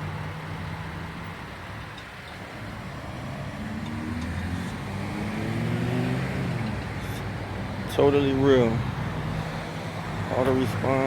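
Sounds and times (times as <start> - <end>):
vehicle engine accelerating: 2.8 - 7.9.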